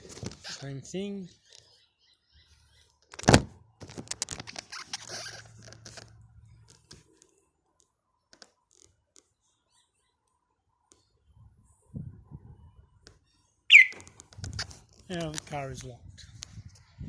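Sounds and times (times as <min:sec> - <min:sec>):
clicks and rattles: 0:03.0 - 0:07.3, 0:13.9 - 0:15.6.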